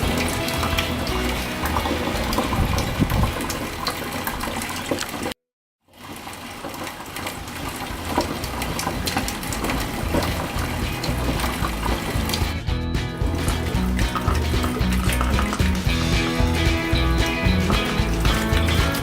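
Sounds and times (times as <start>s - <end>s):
liquid pouring into a vessel: 0.0s - 12.6s, 13.2s - 19.0s.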